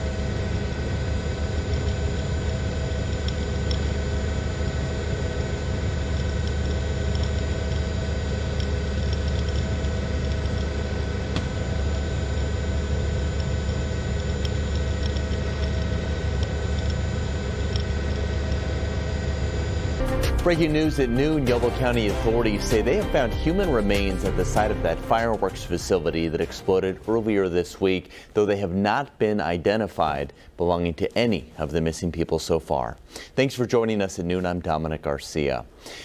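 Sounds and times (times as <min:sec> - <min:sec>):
helicopter engine and rotor drone: 0:00.0 - 0:20.0.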